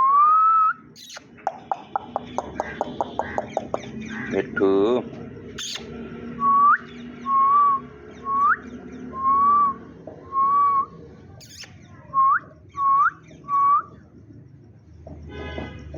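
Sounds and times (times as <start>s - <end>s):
parrot whistling: 0.2s - 3.8s, 5.6s - 8.6s.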